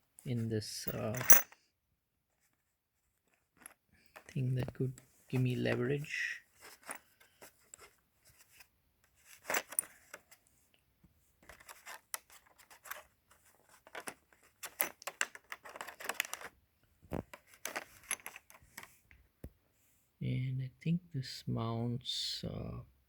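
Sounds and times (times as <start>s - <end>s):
metal tools clicking and scraping: 0.9s - 1.5s, 9.4s - 10.1s.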